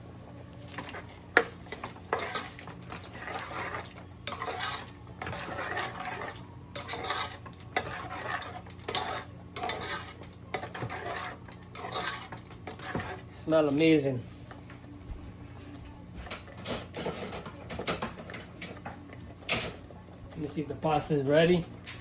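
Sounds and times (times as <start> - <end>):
spoon scraping a pan: 0.6 - 14.6.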